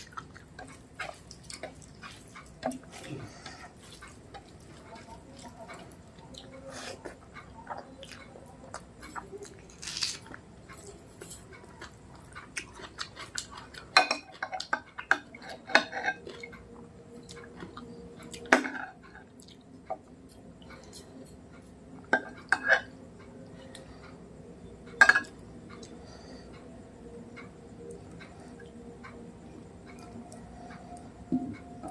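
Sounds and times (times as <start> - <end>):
person chewing: 0.0 - 14.0
clinks and scrapes on a plate: 12.8 - 16.6, 20.8 - 23.0, 24.8 - 25.4.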